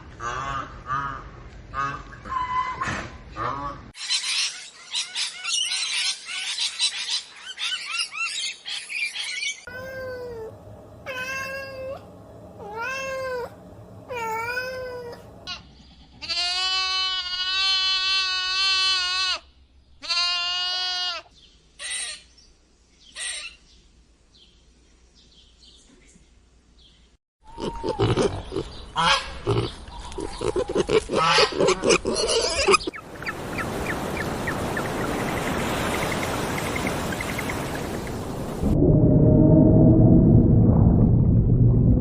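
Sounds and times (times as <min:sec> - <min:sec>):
chorus of high animal cries: 0:09.7 - 0:19.4
cat meowing: 0:11.1 - 0:12.0, 0:12.6 - 0:13.5.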